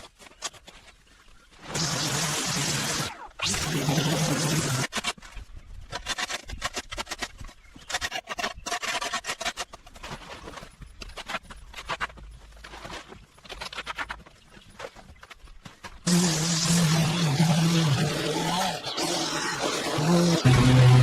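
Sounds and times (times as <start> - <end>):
steady humming: 16.1 - 21.0.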